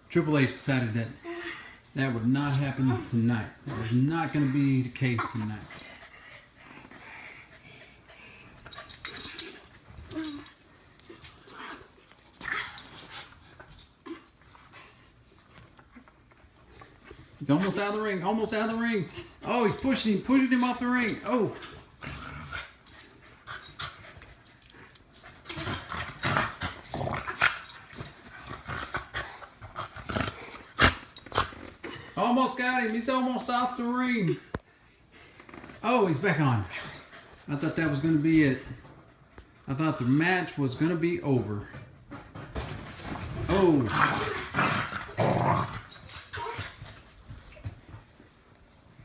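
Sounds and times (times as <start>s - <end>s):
dogs growling: 21.4s - 24.1s, 24.7s - 32.1s, 43.8s - 46.9s.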